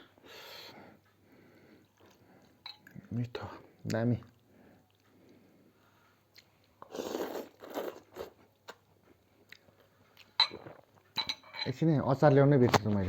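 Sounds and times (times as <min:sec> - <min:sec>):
chewing and crunching food: 0:01.7 - 0:03.2, 0:03.9 - 0:05.7, 0:06.3 - 0:11.2.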